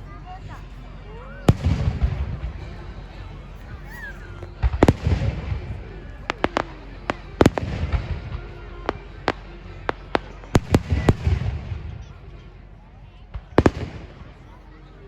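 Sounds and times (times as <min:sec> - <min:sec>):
low rumble: 0:00.0 - 0:14.5
fireworks bangs and cracks: 0:01.5 - 0:03.0, 0:04.5 - 0:12.2, 0:13.3 - 0:14.4.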